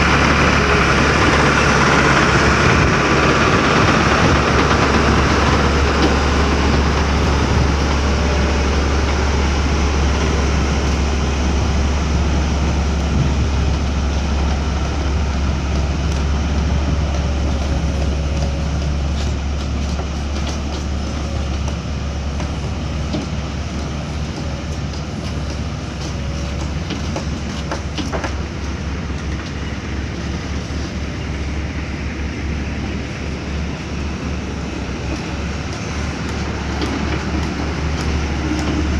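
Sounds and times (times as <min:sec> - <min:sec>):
diesel engine drone: 0:00.0 - 0:38.9
machine knocks and clanks: 0:15.7 - 0:29.6.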